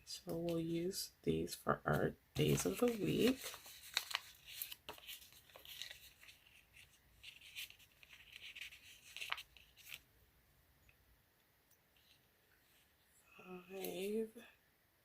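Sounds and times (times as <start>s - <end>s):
paper sticker sheets rustling: 1.9s - 10.0s.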